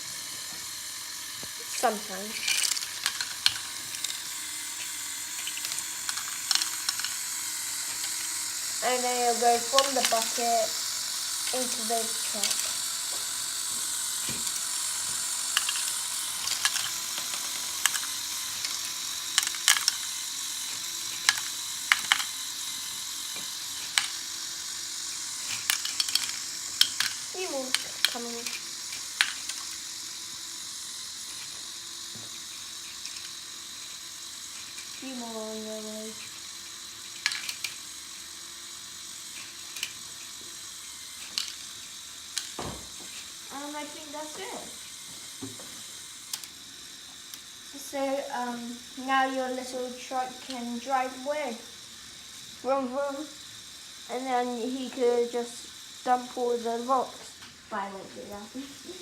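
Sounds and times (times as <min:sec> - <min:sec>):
toy excavator motor whirring: 0:00.0 - 0:59.0
plastic bricks clicking and rattling: 0:01.2 - 0:43.3
thump: 0:42.6 - 0:42.9.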